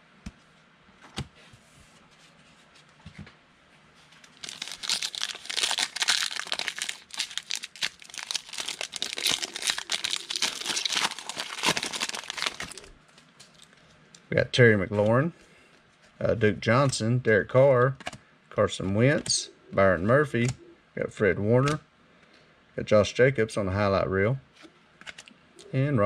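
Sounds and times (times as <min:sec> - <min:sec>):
plastic wrapper tearing and crinkling: 0:04.3 - 0:13.7.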